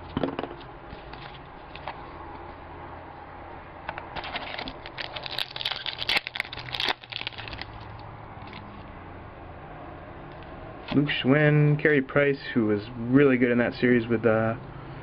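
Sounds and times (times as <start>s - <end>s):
foil wrapper crinkling: 4.2s - 7.9s.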